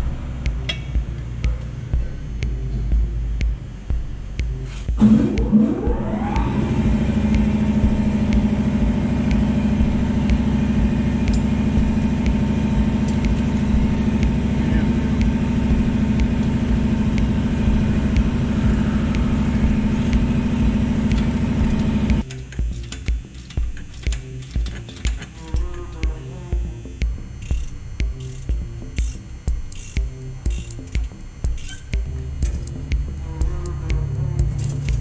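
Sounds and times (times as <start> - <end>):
diesel truck engine idling: 5.0 - 22.2.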